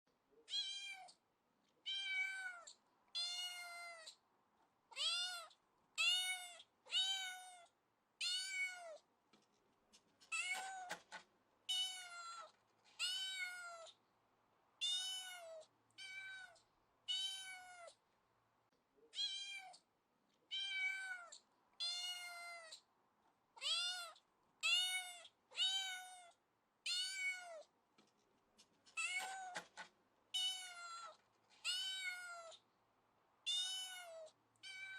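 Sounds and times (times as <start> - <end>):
kitten meowing: 0.5 - 1.1, 1.8 - 4.2, 4.9 - 9.0, 11.7 - 14.0, 14.8 - 18.0, 20.5 - 22.8, 23.6 - 26.3, 26.9 - 27.6, 30.4 - 32.6, 33.5 - 34.9.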